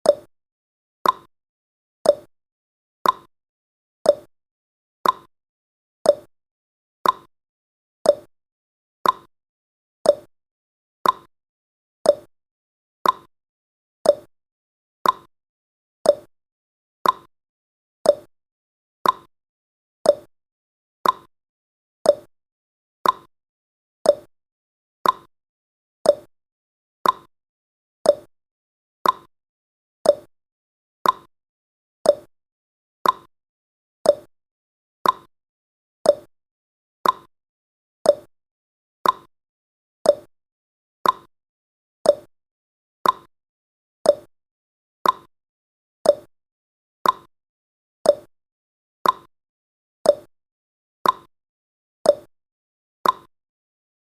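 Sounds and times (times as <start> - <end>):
clock-like timer ticking: 1.0 - 1.3, 2.1 - 2.3, 3.0 - 3.3, 4.1 - 4.3, 5.0 - 5.3, 6.1 - 6.3, 7.0 - 7.3, 8.1 - 8.3, 9.0 - 9.3, 10.1 - 10.3, 11.0 - 11.3, 12.1 - 12.3, 13.0 - 13.3, 14.1 - 14.3, 15.0 - 15.3, 16.1 - 16.3, 17.0 - 17.3, 18.1 - 18.3, 19.0 - 19.3, 20.1 - 20.3, 21.0 - 21.3, 22.1 - 22.3, 23.0 - 23.3, 24.1 - 24.3, 25.0 - 25.3, 26.1 - 26.3, 27.0 - 27.3, 28.0 - 28.3, 29.0 - 29.3, 30.0 - 30.3, 31.0 - 31.3, 32.1 - 32.3, 33.0 - 33.3, 34.1 - 34.3, 35.0 - 35.3, 36.0 - 36.3, 37.0 - 37.3, 38.1 - 38.3, 39.0 - 39.3, 40.1 - 40.3, 41.0 - 41.3, 42.1 - 42.3, 43.0 - 43.3, 44.1 - 44.3, 45.0 - 45.3, 46.1 - 46.3, 47.0 - 47.3, 48.1 - 48.3, 49.0 - 49.3, 50.1 - 50.3, 51.0 - 51.3, 52.1 - 52.3, 53.0 - 53.3.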